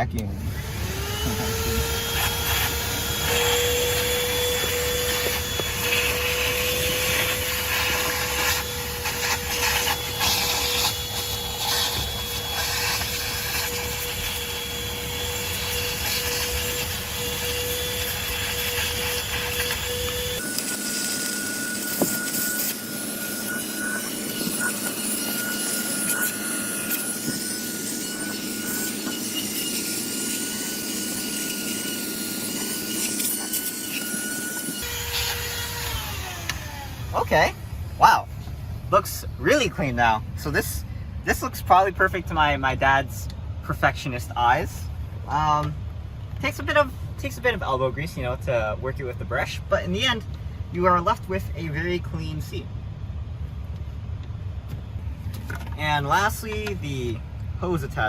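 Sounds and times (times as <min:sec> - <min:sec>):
handheld vacuum motor whine: 0:00.4 - 0:38.0
brush scrubbing upholstery: 0:01.0 - 0:14.5, 0:15.4 - 0:20.5.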